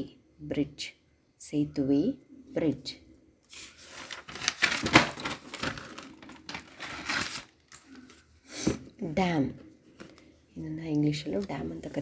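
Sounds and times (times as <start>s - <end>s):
paper crinkling and rustling: 3.5s - 8.2s.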